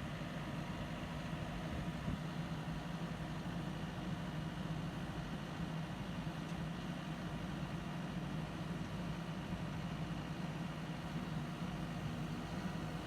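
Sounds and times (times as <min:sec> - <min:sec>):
diesel engine idling: 0:09.8 - 0:13.0.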